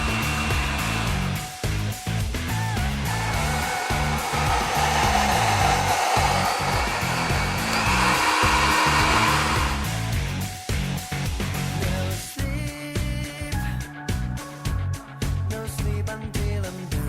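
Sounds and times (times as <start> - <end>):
hair dryer blowing: 0.0 - 1.9, 2.6 - 10.4
background music: 0.0 - 17.0.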